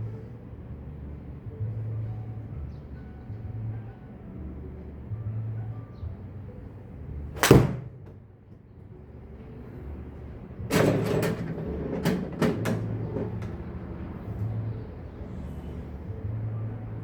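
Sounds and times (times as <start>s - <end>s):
golf club swish and hit: 7.4s - 7.6s.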